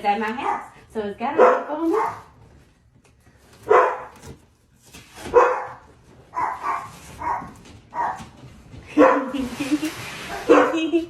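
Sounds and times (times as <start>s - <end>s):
dog barking: 0.4s - 2.4s, 3.6s - 4.2s, 5.2s - 9.4s, 10.3s - 11.0s.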